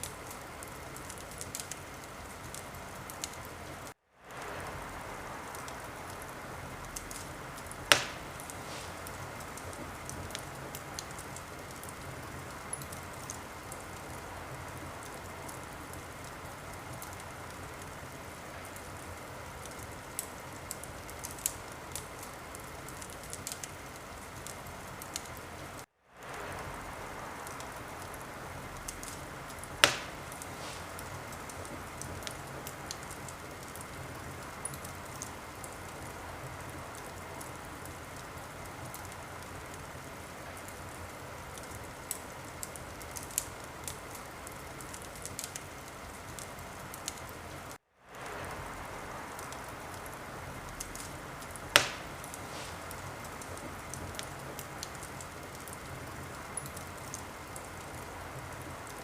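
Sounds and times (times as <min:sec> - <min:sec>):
soft hiss: 0:00.0 - 0:59.0
wood fire crackling: 0:00.0 - 0:59.0
loud pops from fire: 0:05.5 - 0:14.2, 0:15.0 - 0:36.1, 0:50.8 - 0:57.2.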